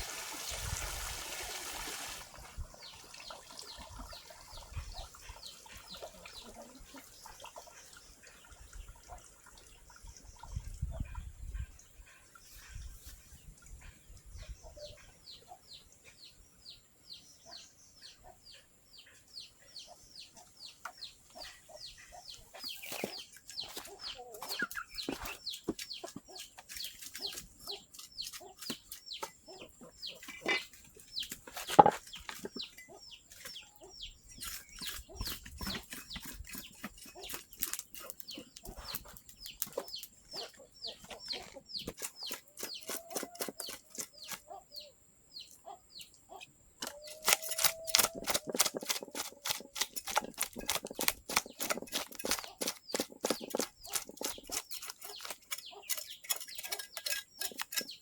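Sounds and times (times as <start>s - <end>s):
chicks peeping: 18.5s - 26.5s, 27.1s - 31.4s, 32.6s - 58.0s.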